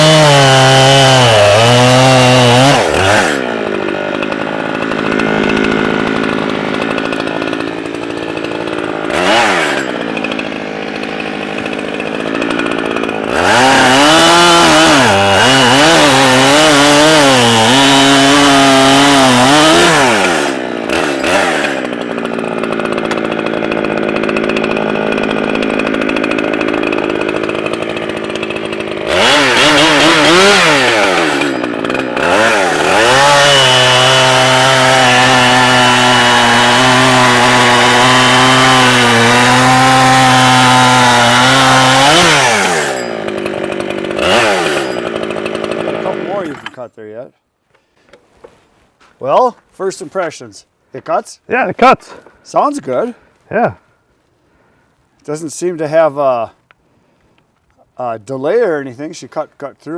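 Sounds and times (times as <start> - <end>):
chainsaw cutting wood: 0.0 - 46.9.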